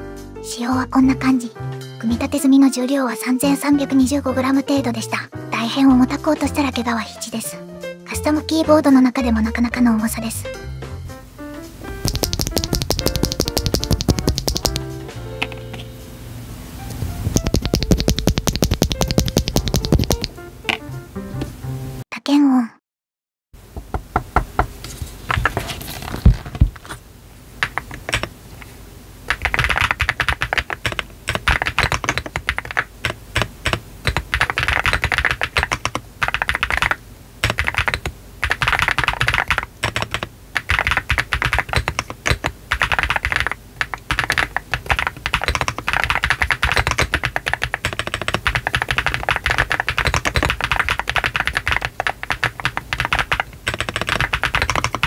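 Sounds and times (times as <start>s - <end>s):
typing on mechanical keyboard: 12.0s - 14.8s, 17.4s - 20.3s, 27.6s - 28.3s, 29.3s - 55.0s.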